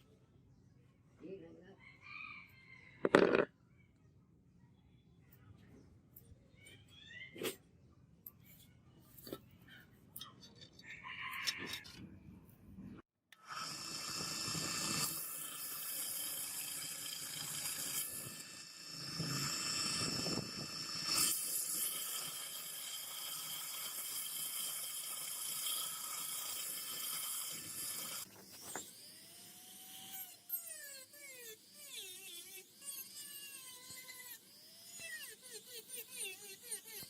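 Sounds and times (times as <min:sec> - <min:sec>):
rotary tool whining on metal: 0:10.2 - 0:12.0, 0:13.4 - 0:37.0.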